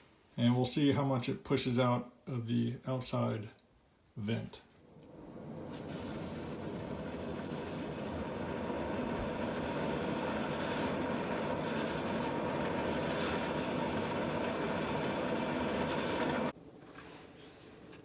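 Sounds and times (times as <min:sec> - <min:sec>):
shop vac blowing air: 0:04.8 - 0:16.6
drill spinning brush rods: 0:04.9 - 0:16.6.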